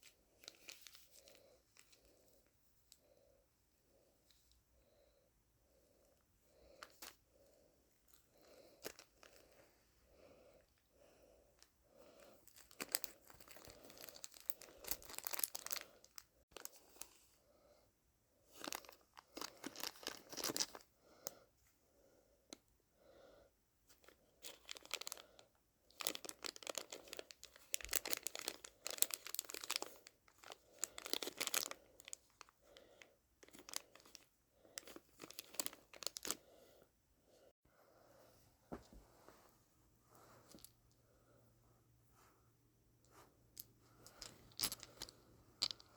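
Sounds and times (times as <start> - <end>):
plastic pack tearing and crinkling: 26.0 - 30.1.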